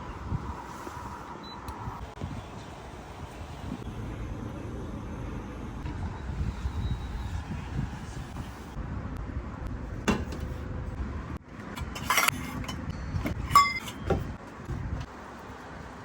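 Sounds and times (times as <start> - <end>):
steady low rumble: 0.0 - 15.1
tableware knocking and clinking: 11.8 - 14.2.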